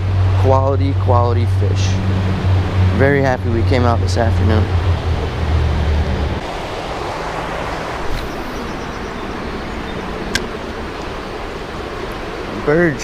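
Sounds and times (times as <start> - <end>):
wind on microphone: 0.0 - 12.4
low hum: 0.0 - 12.7
creek rushing: 0.0 - 13.0.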